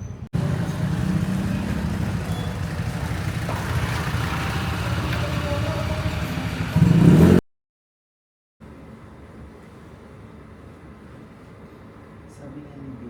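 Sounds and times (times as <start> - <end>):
vehicle engine and road noise: 0.0 - 7.4.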